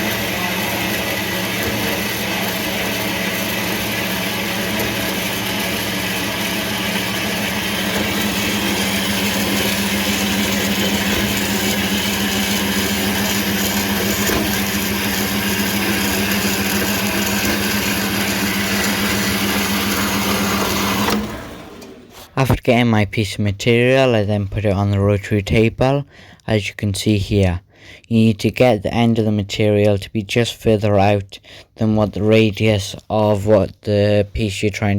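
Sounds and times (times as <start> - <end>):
bandsaw cutting metal: 0.0 - 22.4.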